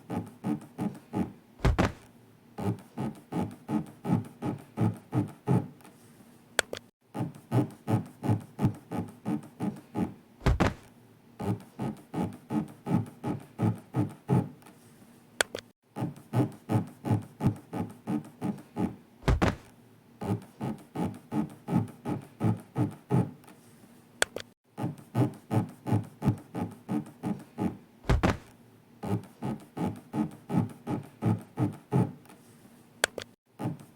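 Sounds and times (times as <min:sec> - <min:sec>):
deep heavy thud: 0:01.6 - 0:02.1, 0:10.4 - 0:10.9, 0:19.2 - 0:19.7, 0:28.1 - 0:28.5.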